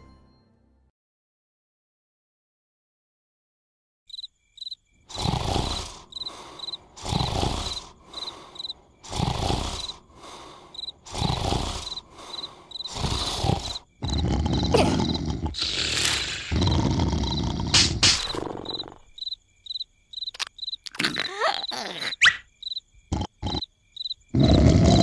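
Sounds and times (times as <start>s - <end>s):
crickets chirping: 4.1s - 25.0s
cartoon snoring: 5.1s - 19.1s, 20.9s - 22.4s, 23.1s - 23.7s, 24.3s - 25.0s.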